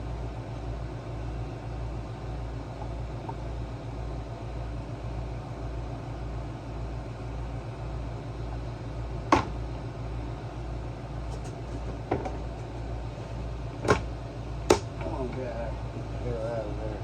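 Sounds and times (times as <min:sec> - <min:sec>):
steady low hum: 0:00.0 - 0:17.0
tools knocking on parts: 0:11.3 - 0:12.5, 0:14.7 - 0:15.0.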